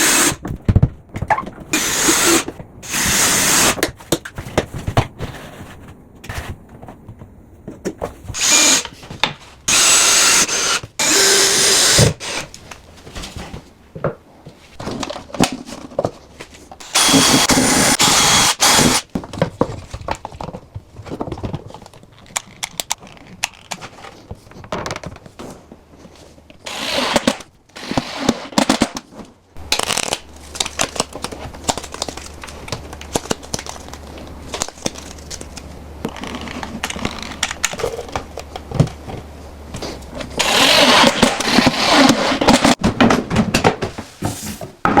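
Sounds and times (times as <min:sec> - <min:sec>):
carpentry knocks and clatter: 0:42.5 - 0:45.0.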